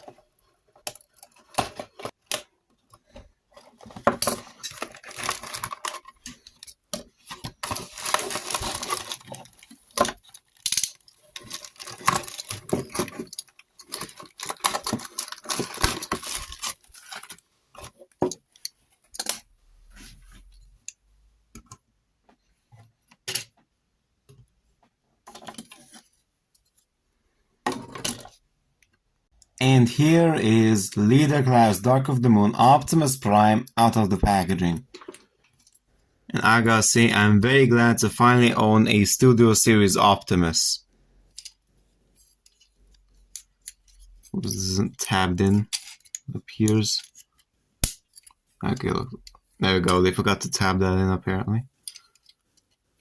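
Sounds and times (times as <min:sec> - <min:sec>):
cardboard packaging rustling and tearing: 0:03.7 - 0:18.0.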